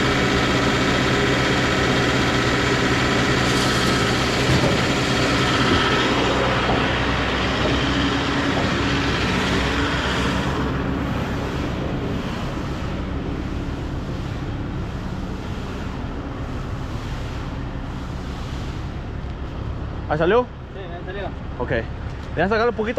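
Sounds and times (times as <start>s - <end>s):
broad rushing noise: 0.0s - 22.9s
engine running steadily: 0.0s - 22.9s.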